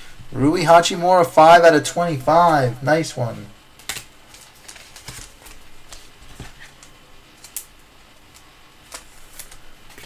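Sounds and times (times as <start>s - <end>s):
cards tapping and rustling: 3.8s - 10.0s.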